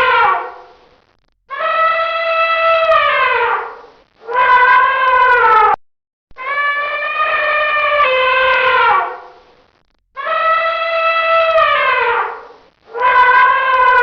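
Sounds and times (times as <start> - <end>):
elephant trumpeting: 6.4 - 9.4, 10.2 - 14.0.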